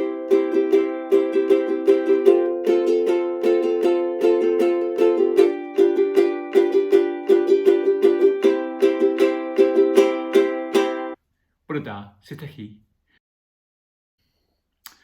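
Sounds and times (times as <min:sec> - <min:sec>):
strummed ukulele: 0:00.0 - 0:11.2.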